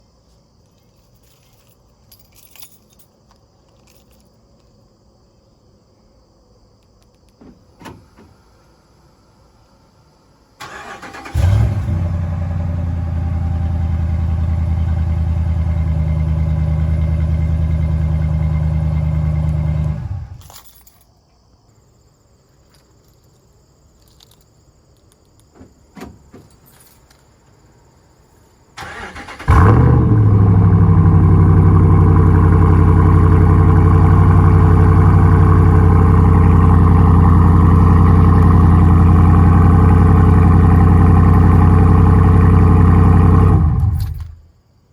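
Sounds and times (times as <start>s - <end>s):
truck engine revving and idling: 10.7s - 20.4s, 28.8s - 44.4s.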